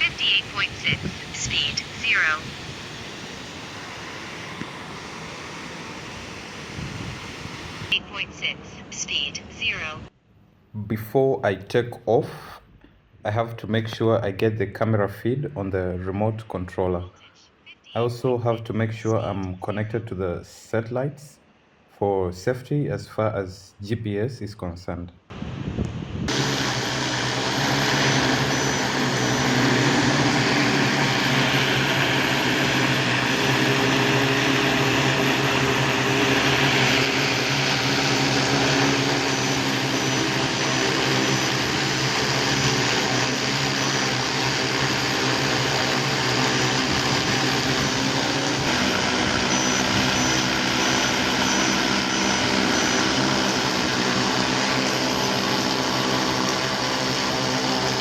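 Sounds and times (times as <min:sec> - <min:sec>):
drone propellers whirring: 0:00.0 - 0:09.7, 0:25.3 - 0:58.0.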